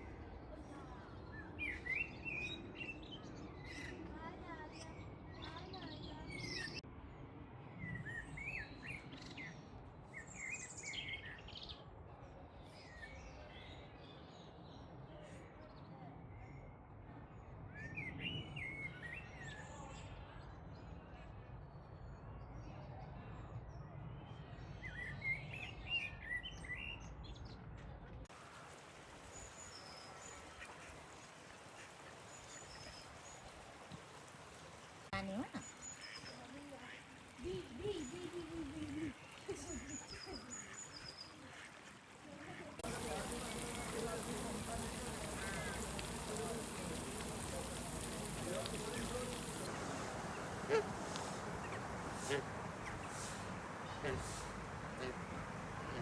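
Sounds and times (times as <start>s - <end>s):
soft steady hiss: 28.3s - 56.0s
birds chirping: 39.2s - 56.0s
steady background noise: 41.8s - 56.0s.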